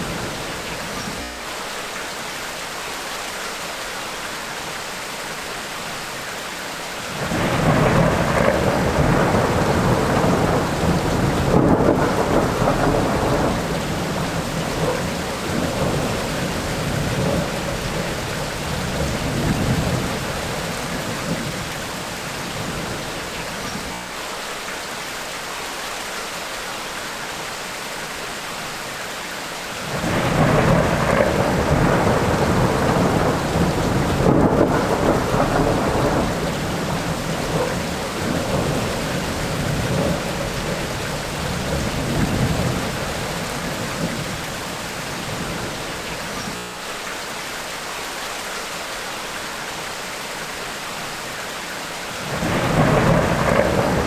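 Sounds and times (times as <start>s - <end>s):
steady rain falling: 0.0s - 54.0s
rolling thunder: 7.1s - 24.0s, 29.8s - 46.6s, 52.2s - 54.0s.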